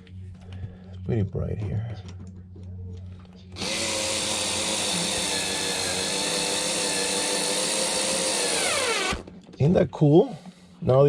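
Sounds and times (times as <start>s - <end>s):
power drill driving screw into wood: 3.6s - 9.3s.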